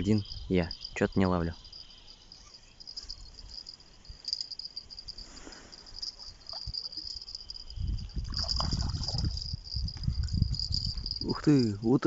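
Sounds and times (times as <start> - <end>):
crickets chirring: 0.0 - 12.0
wind rumble on microphone: 6.0 - 12.0.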